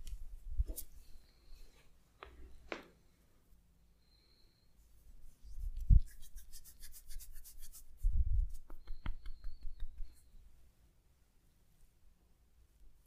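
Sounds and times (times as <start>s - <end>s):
fast rhythmic rubbing strokes: 5.2s - 10.2s.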